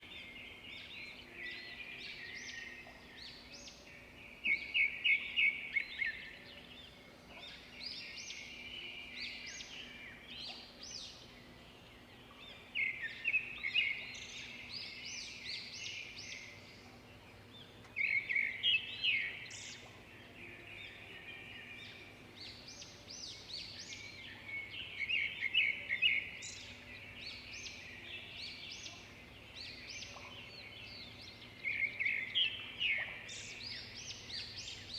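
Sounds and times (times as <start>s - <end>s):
faint steady background noise: 0.0s - 34.9s.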